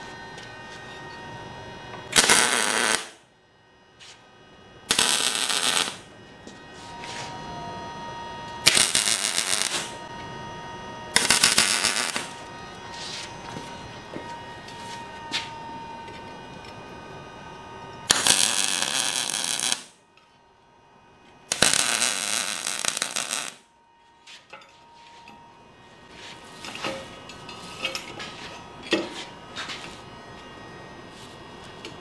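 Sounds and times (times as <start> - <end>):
welding arc crackling: 2.1 - 3.2, 4.8 - 6.1, 8.6 - 10.0, 11.1 - 12.4, 18.0 - 20.0, 21.5 - 23.6.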